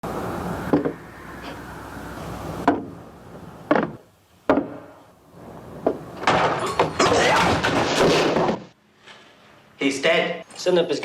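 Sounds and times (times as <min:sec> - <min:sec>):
sharp knocks: 0:02.6 - 0:02.9, 0:03.7 - 0:05.0.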